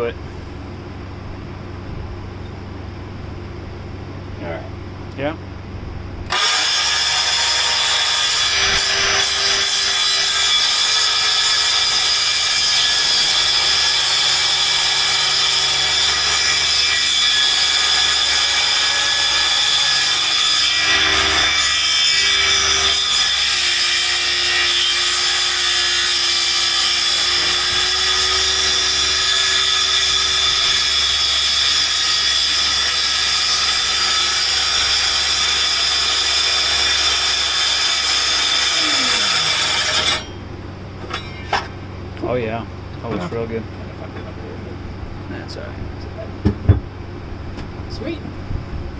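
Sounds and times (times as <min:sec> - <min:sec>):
power saw cutting wood: 0:06.3 - 0:40.4.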